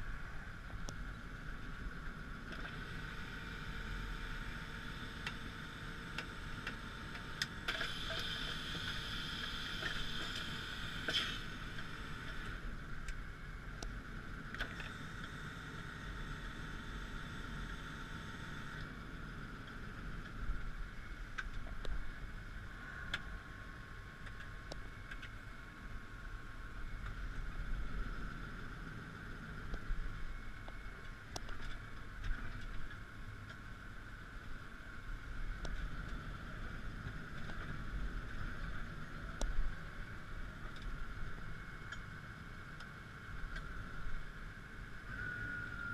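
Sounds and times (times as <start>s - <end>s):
tractor diesel engine under load: 0.0s - 22.2s.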